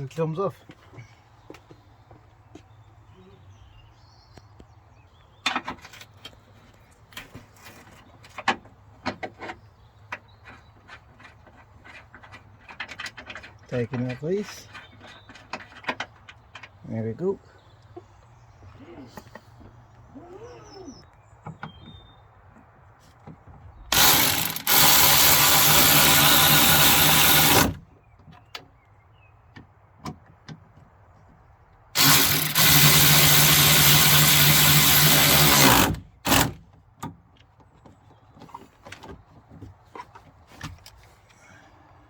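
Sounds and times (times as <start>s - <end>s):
cordless drill running: 23.9s - 27.8s, 32.0s - 36.5s.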